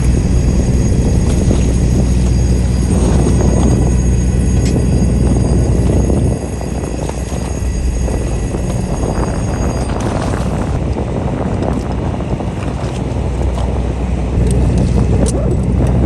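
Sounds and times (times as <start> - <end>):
faint high steady tones: 0.0 - 10.8
boat engine running: 0.0 - 16.0
wind on microphone: 0.0 - 16.0.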